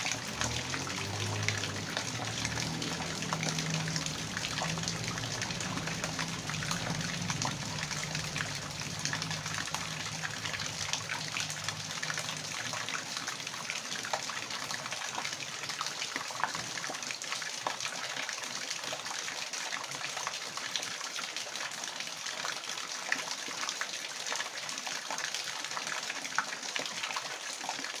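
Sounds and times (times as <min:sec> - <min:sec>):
drip-like ticks: 0:00.0 - 0:19.1
water rushing and splashing: 0:00.0 - 0:28.0.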